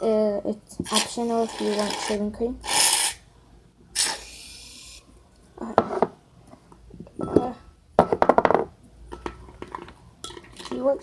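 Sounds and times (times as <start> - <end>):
aerosol can hissing: 4.0 - 5.0.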